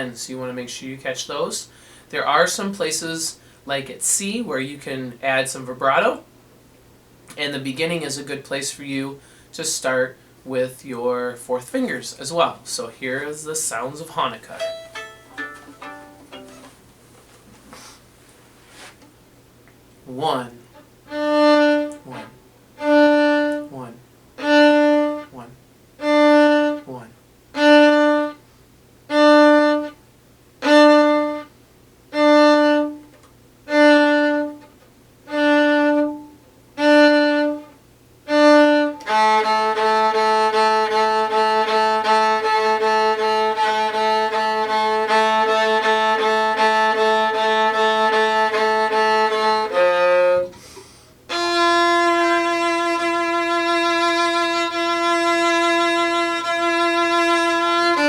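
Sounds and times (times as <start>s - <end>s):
viola playing repeated notes: 13.7s - 16.8s, 20.1s - 28.4s, 29.1s - 30.0s, 30.6s - 31.5s, 32.1s - 33.1s, 33.7s - 34.7s, 35.3s - 58.0s
string ensemble passage: 38.6s - 50.6s.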